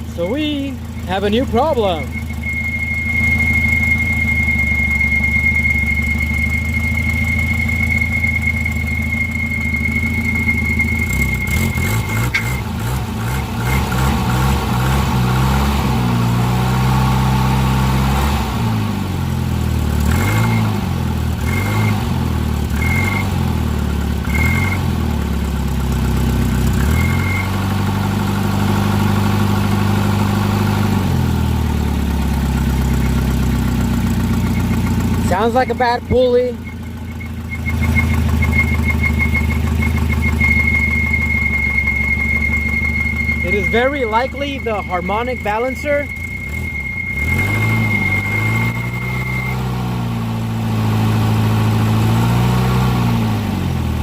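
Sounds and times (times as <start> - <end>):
high-pitched squeal: 0.0 - 15.7, 32.8 - 50.3
car engine idling and revving: 0.0 - 54.0.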